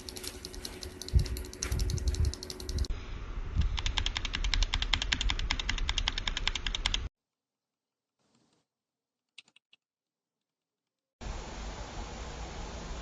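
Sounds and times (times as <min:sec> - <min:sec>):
mechanical keyboard typing: 0:00.0 - 0:02.9, 0:03.8 - 0:07.1.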